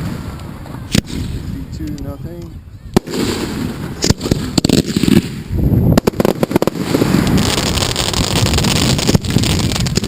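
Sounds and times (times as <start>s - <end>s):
firework bangs: 0.0s - 1.6s, 3.0s - 10.0s
firework cracks: 3.0s - 10.0s.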